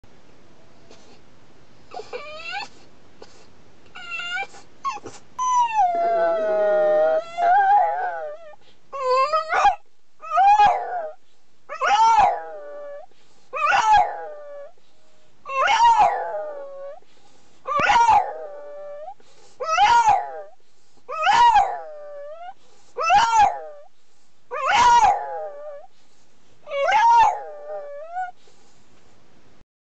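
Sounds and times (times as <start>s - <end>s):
dog howling: 4.0s - 13.0s, 13.6s - 14.7s, 15.5s - 17.0s, 17.7s - 20.5s, 21.1s - 23.9s, 24.5s - 25.9s, 26.7s - 28.3s.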